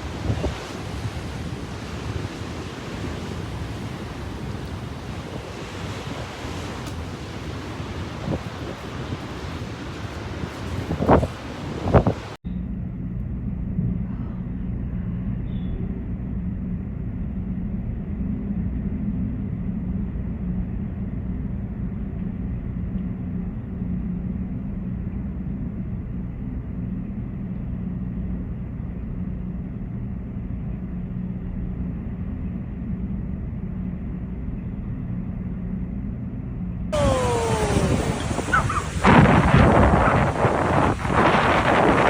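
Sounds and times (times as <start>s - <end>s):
storm wind rumble: 0.0s - 42.0s
crashing surf: 37.0s - 42.0s.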